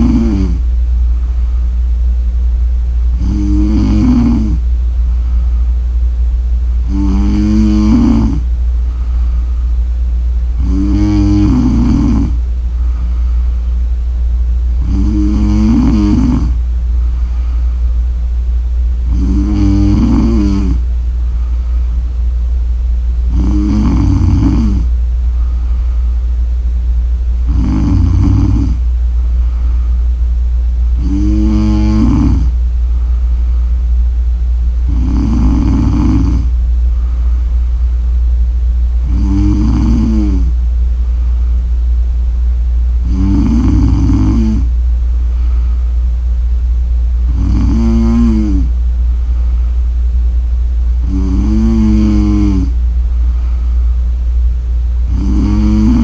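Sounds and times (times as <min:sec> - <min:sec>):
woman snoring: 0:00.0 - 0:00.7, 0:03.1 - 0:04.7, 0:06.8 - 0:08.5, 0:10.5 - 0:13.2, 0:14.8 - 0:16.7, 0:19.0 - 0:20.9, 0:23.3 - 0:25.6, 0:27.4 - 0:28.9, 0:31.0 - 0:32.6, 0:34.8 - 0:36.6, 0:39.0 - 0:40.6, 0:43.0 - 0:44.8, 0:47.2 - 0:48.8, 0:51.0 - 0:52.8, 0:55.0 - 0:56.0
steady low hum: 0:00.0 - 0:56.0.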